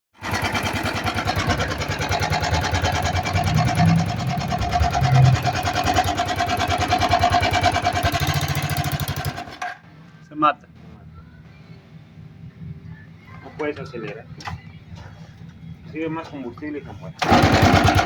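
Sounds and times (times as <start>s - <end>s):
motorcycle engine idling: 0.2s - 9.6s, 17.2s - 18.0s.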